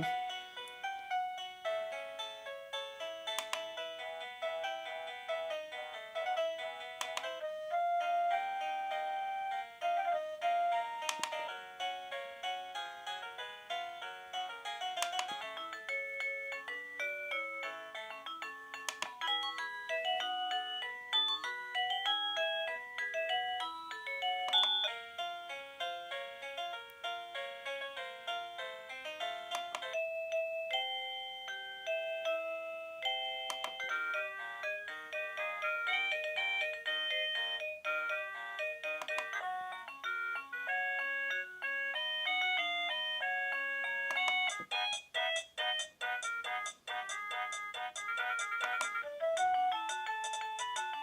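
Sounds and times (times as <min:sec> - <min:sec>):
doorbell chime melody: 0:14.8 - 0:51.0.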